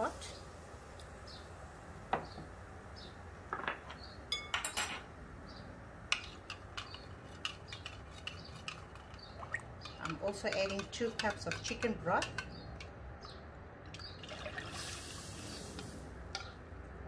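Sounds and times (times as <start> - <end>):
utensils clinking against pot: 6.1 - 13.0.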